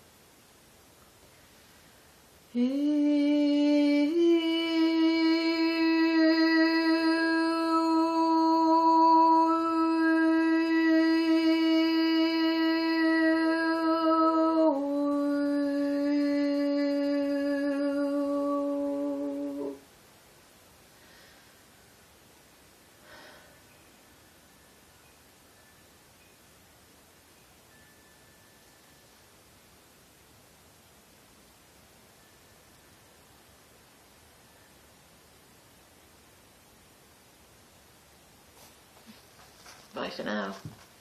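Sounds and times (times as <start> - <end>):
woman singing sustained wordless tones: 2.5 - 19.9.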